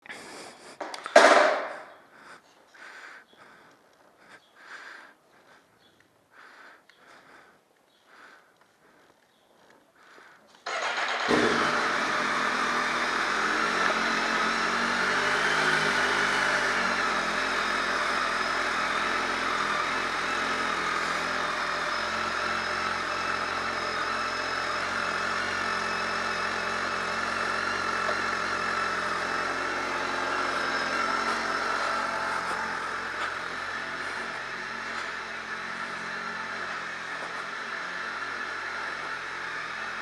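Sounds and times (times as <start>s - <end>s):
motorcycle engine starting and idling: 0.8s - 2.0s, 10.0s - 40.0s.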